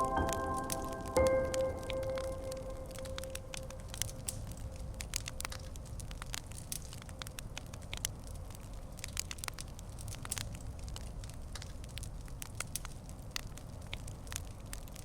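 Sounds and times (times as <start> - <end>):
held musical note: 0.0 - 4.1
fireplace crackling and popping: 1.8 - 15.0.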